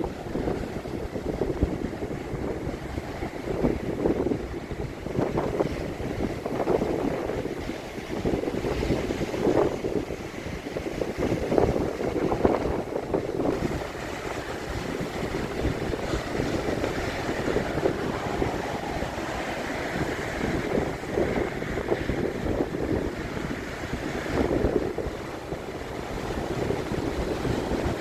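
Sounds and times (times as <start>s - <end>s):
sea surf breaking: 0.0s - 28.0s
wind gusting across microphone: 0.0s - 28.0s.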